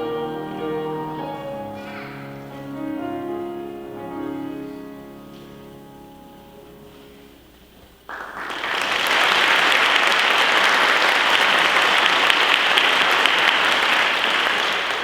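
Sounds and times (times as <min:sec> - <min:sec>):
piano-accompanied music: 0:00.0 - 0:07.4
audience applauding: 0:08.1 - 0:15.0.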